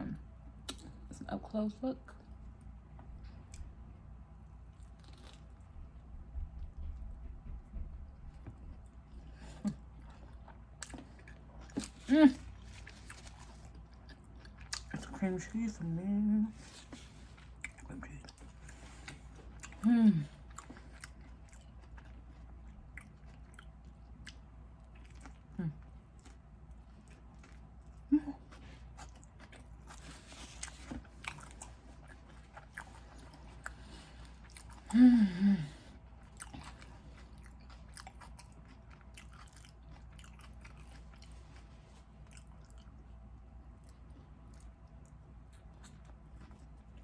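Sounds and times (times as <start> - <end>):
chewing with wet mouth clicks: 0.6 - 1.0, 12.7 - 15.2, 17.4 - 19.8, 20.4 - 28.1, 29.0 - 34.9, 36.2 - 47.0
person humming mm: 34.9 - 35.8.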